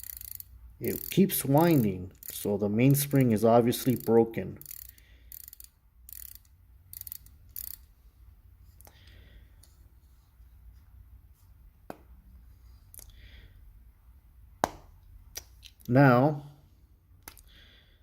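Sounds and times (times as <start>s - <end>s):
watch winding ratchet clicks: 0.0s - 7.9s.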